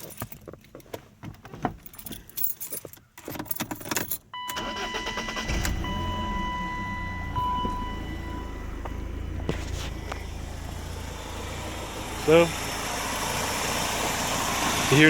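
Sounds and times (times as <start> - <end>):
keys jangling in ignition: 0.0 - 0.9, 1.7 - 5.5
car engine starting and idling: 4.4 - 15.0
steady high tone: 4.5 - 9.4.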